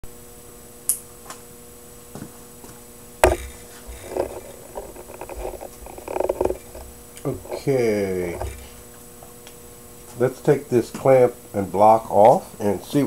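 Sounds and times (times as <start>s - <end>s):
faint steady hum: 0.0s - 13.0s
sharp knock on hard surface: 3.2s - 6.8s
creaking and rasping handling noises: 3.2s - 8.9s.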